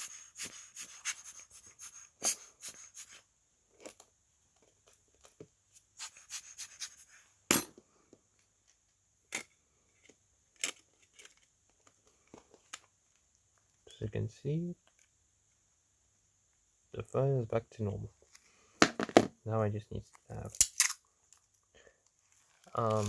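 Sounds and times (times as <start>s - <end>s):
sharp knock: 18.8s - 19.3s.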